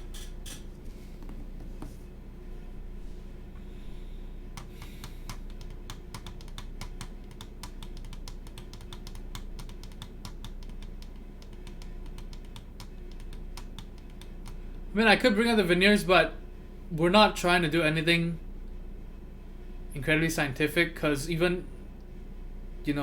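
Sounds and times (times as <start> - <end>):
computer keyboard typing: 4.6 - 14.6.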